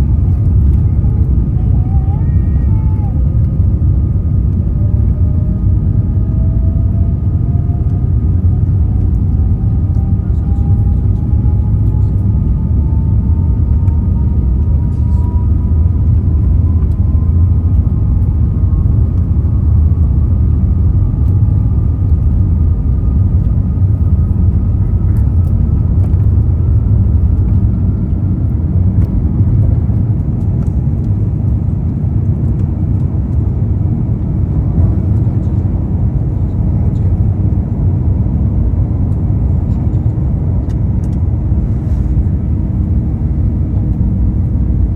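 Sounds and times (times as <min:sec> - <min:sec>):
thin engine whine: 0:00.0 - 0:31.2
airplane cabin rumble: 0:00.0 - 0:44.9.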